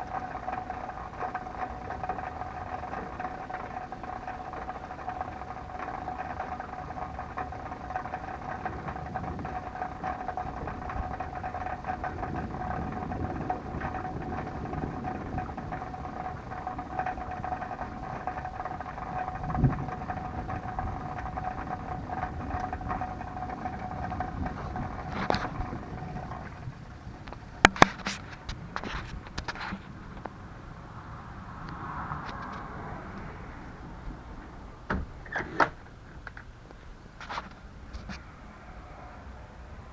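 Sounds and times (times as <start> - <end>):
vehicle engine running with whine: 0.0 - 39.9
thump: 34.9 - 35.8.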